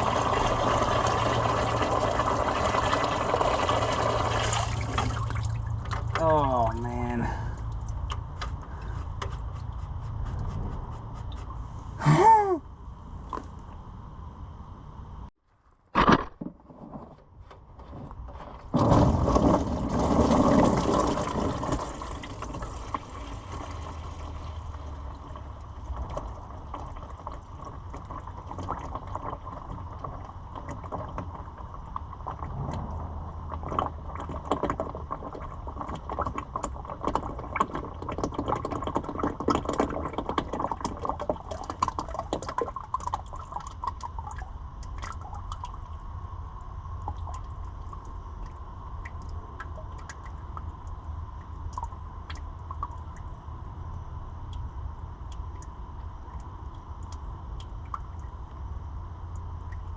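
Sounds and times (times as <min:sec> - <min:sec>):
liquid dripping: 0:20.6 - 0:46.1, 0:47.0 - 0:59.9.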